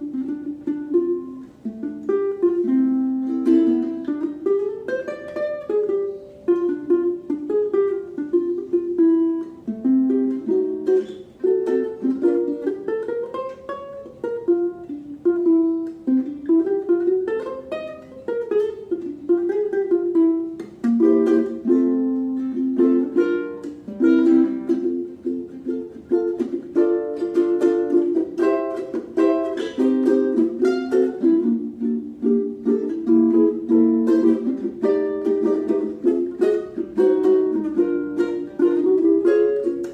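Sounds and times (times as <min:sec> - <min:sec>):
ukulele fingerstyle melody: 0:00.0 - 0:39.9.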